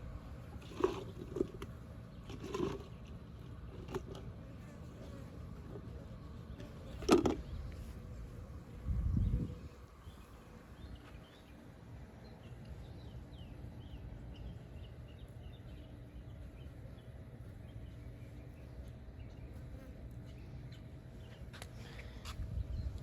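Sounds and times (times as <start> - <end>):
faint outdoor background noise: 0.0 - 23.0
small birds chirping: 9.1 - 23.0.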